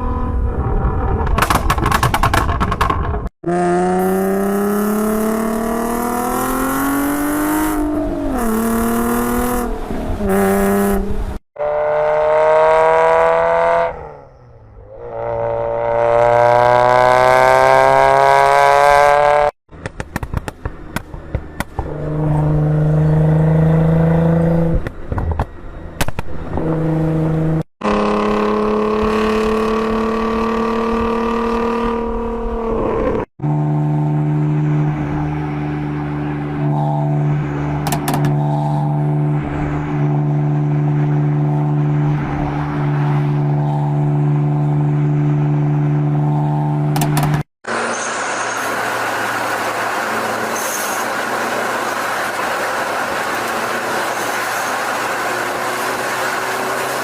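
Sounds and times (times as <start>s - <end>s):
sports car engines revving: 0.0s - 57.0s
exhaust crackles and pops: 0.4s - 3.3s, 19.7s - 22.4s, 24.7s - 26.6s, 48.6s - 57.0s.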